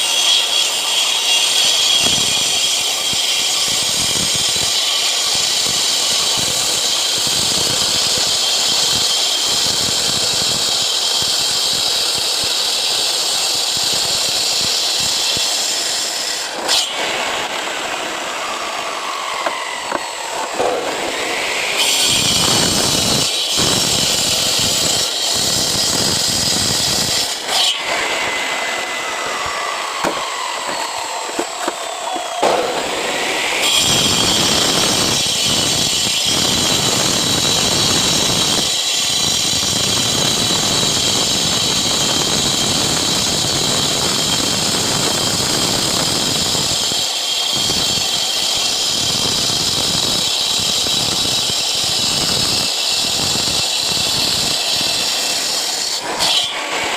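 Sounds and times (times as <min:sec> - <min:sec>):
gritty concrete cutting noise: 0:00.0 - 0:56.9
power cutter whining: 0:00.0 - 0:56.9.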